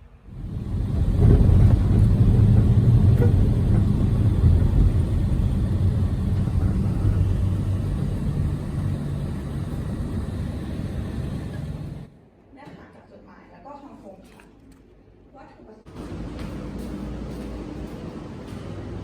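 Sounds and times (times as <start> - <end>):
loud low rumble: 0.3 - 12.1.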